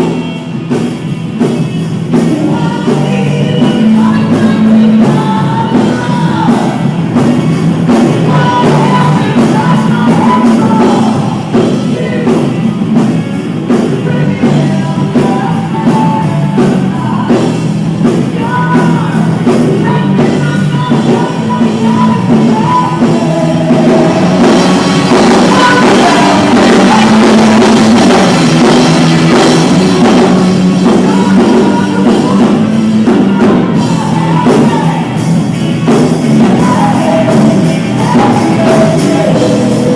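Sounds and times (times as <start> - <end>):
live pop-rock band: 0.0 - 39.9
person singing: 1.6 - 39.9.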